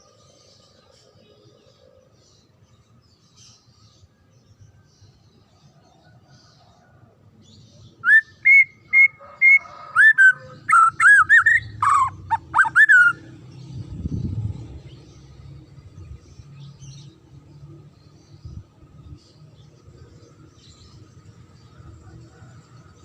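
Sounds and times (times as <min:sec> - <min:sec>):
bird whistling song: 0:07.8 - 0:13.3
low rumble: 0:13.4 - 0:16.4.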